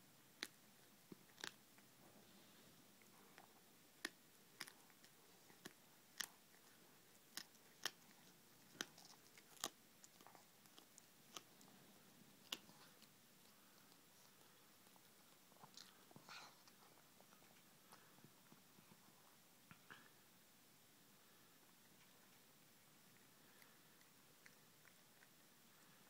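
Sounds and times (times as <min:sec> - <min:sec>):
cat crunching on a bird: 0:00.4 - 0:01.9, 0:03.0 - 0:18.9.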